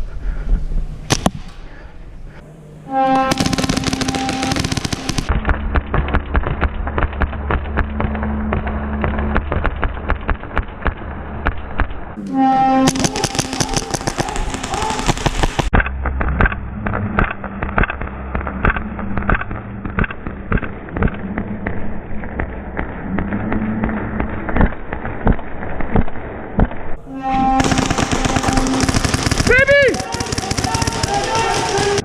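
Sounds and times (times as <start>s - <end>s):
airsoft guns firing: 1.1s - 1.8s, 3.3s - 8.2s, 12.9s - 15.7s, 27.6s - 32.0s.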